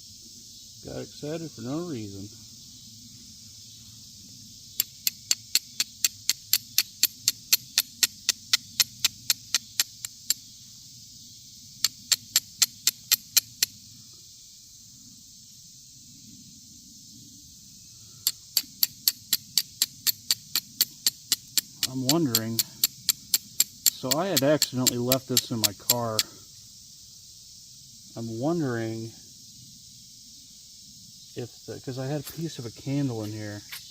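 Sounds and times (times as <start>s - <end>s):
steel striker scraping flint: 4.8s - 10.4s, 11.8s - 13.7s, 18.3s - 26.2s.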